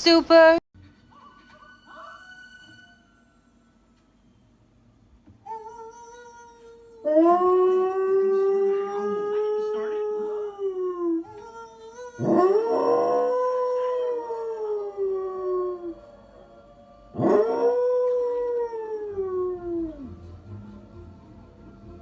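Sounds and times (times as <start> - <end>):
dog howling: 5.5 - 20.2.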